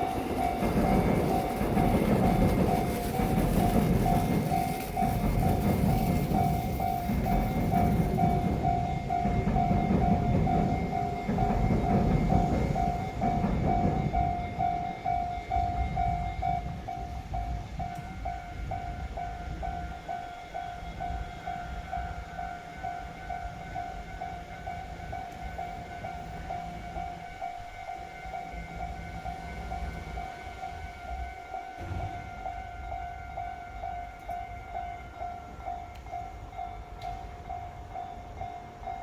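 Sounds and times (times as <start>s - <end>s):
higher-pitched crossing bell: 0.0s - 39.0s
level-crossing warning bell: 0.0s - 39.0s
train rumbling past: 0.0s - 39.0s.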